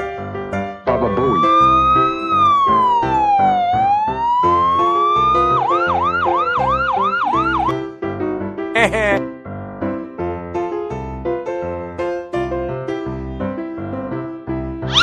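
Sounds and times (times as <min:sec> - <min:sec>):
emergency siren wailing and yelping: 0:01.2 - 0:07.7.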